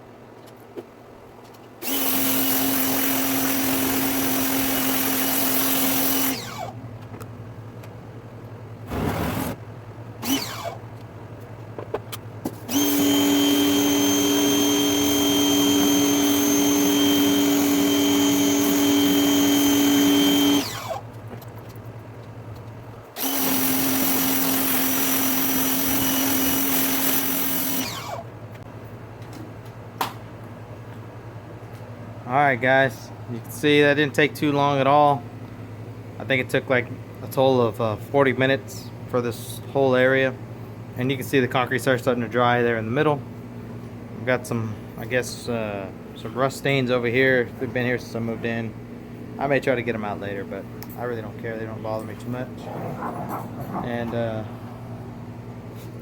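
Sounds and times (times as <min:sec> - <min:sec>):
pressure washer motor whine: 0:01.8 - 0:06.8, 0:10.2 - 0:10.8, 0:12.7 - 0:21.0, 0:23.2 - 0:28.3.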